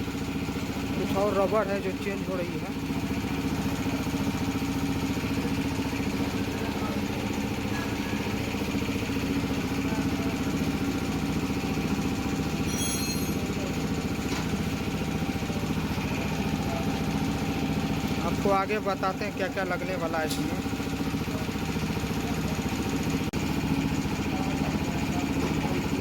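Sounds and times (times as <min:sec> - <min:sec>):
motorcycle engine idling: 0:00.0 - 0:26.0
high squeak: 0:12.6 - 0:13.6.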